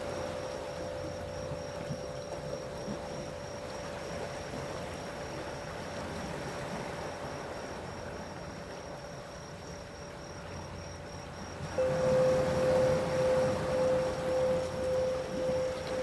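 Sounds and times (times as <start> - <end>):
high insect chirp: 0.0 - 16.0
sea washing: 11.5 - 16.0.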